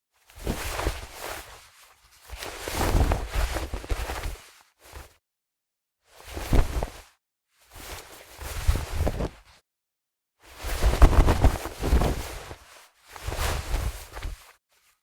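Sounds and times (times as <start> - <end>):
fabric rustling: 0.3 - 5.1, 6.2 - 7.1, 7.8 - 9.6, 10.5 - 15.0.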